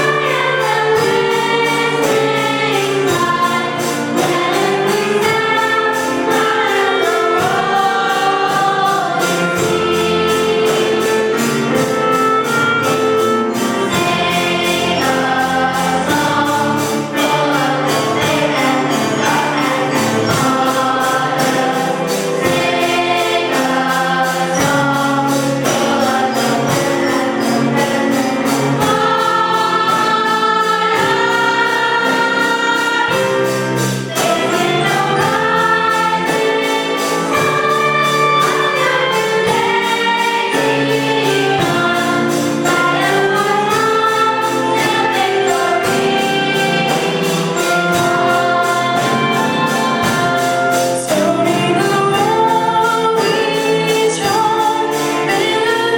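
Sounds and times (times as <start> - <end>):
choir singing gospel song: 0.0 - 55.9
instrumental accompaniment: 0.0 - 55.9
steady percussion beat: 0.0 - 55.9.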